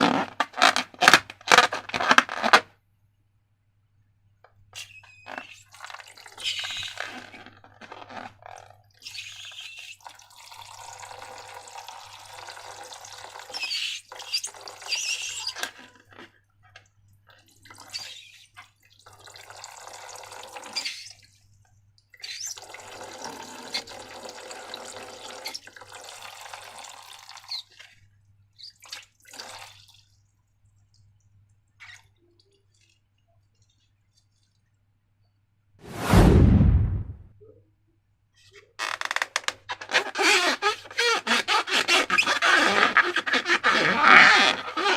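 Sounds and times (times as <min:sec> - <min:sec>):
liquid pouring and dripping: 0:09.8 - 0:14.9, 0:17.0 - 0:28.0, 0:28.7 - 0:34.8.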